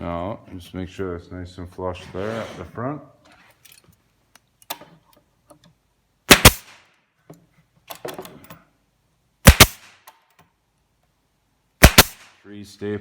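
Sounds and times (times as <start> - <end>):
staple gun firing: 11.8 - 12.3.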